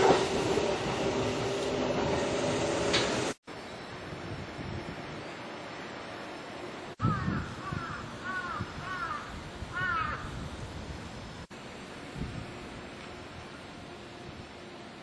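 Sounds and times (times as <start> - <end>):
steady background noise: 3.4 - 15.0
crow cawing: 7.0 - 10.3.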